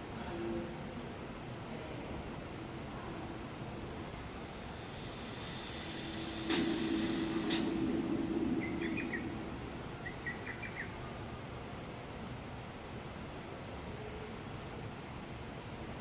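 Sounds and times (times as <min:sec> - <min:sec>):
outdoor background noise: 0:00.0 - 0:16.0
low hum: 0:02.3 - 0:11.0
bird chirps: 0:08.6 - 0:11.0.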